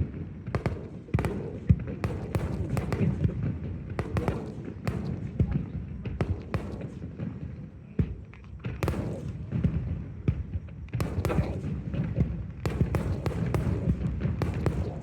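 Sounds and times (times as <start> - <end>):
fireworks bangs and crackles: 0.0 - 15.0.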